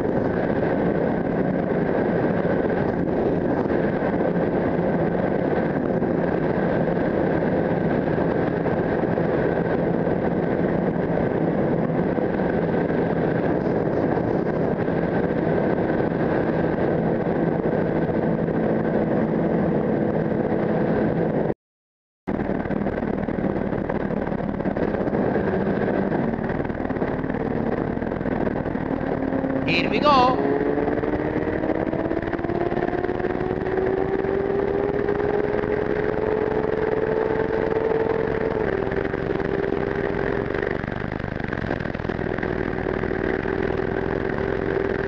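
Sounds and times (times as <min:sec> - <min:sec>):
motorcycle engine cruising: 0:00.0 - 0:21.5, 0:22.4 - 0:45.0
wind rush: 0:00.0 - 0:21.6, 0:22.3 - 0:45.0.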